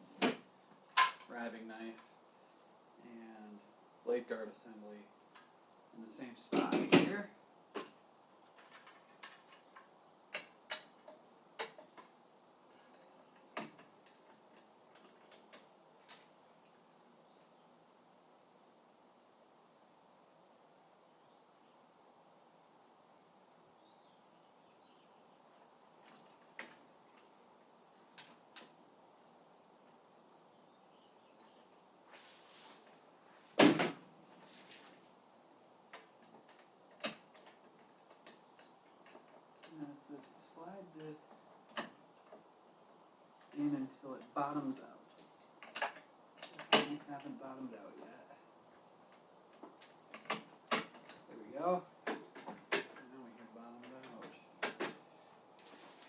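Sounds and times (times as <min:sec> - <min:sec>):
parts clicking and knocking: 0:00.1 - 0:01.3, 0:07.7 - 0:16.4, 0:45.1 - 0:47.0, 0:48.7 - 0:51.3, 0:53.8 - 0:55.1.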